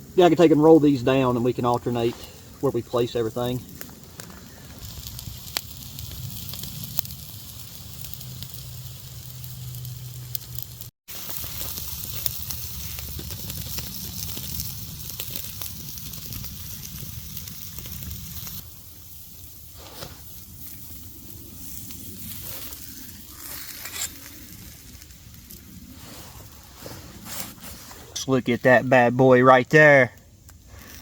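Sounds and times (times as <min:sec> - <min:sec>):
fire crackling and popping: 0:00.0 - 0:31.0
steak sizzling on a grill: 0:00.1 - 0:26.0.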